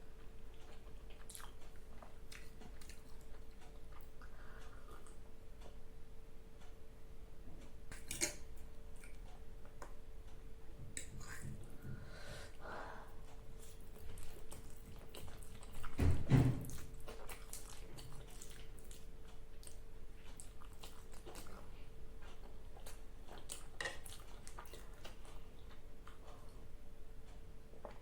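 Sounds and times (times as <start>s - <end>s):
faint steady hum: 0.0s - 28.0s
close chewing and mouth clicks: 0.1s - 5.2s, 7.9s - 10.0s, 13.2s - 26.7s.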